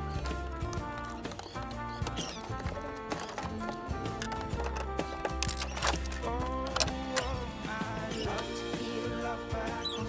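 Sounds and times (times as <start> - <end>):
pop song playing: 6.1 - 10.0.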